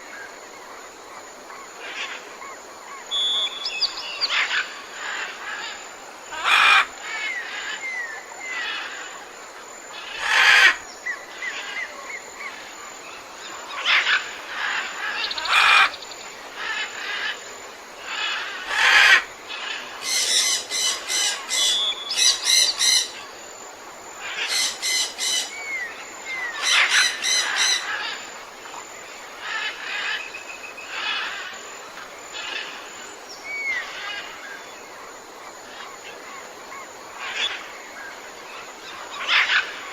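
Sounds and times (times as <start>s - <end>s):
harsh bird calls: 3.0s - 8.9s, 24.2s - 28.3s
soft down-slurred bird whistles: 3.1s - 4.0s.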